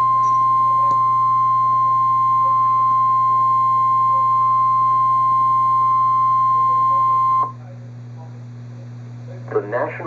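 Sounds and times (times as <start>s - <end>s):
steady warning alarm beep: 0.0s - 7.6s
low steady hum: 0.0s - 10.0s.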